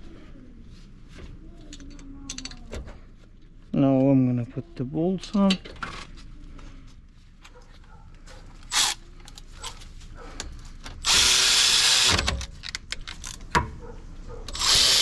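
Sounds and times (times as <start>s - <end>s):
power drill driving bolt: 11.0s - 12.5s, 14.5s - 15.0s.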